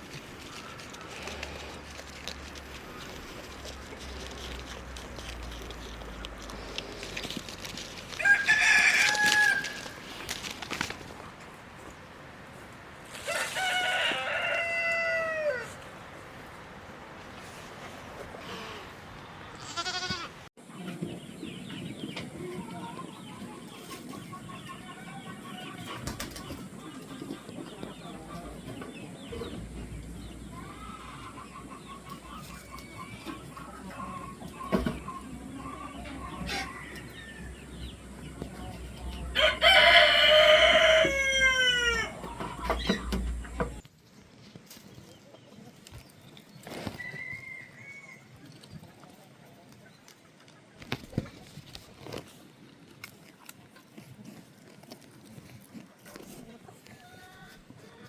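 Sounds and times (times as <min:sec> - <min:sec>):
rooster crowing: 0:08.2 - 0:10.0, 0:13.2 - 0:15.8, 0:39.2 - 0:42.3, 0:47.0 - 0:48.2
chickens clucking softly: 0:20.7 - 0:43.8.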